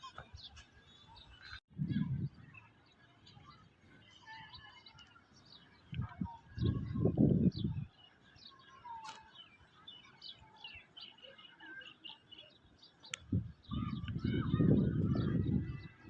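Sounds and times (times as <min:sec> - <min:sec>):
small birds chirping: 0:00.0 - 0:16.0
wind gusts rumbling: 0:01.7 - 0:02.6, 0:13.2 - 0:16.0.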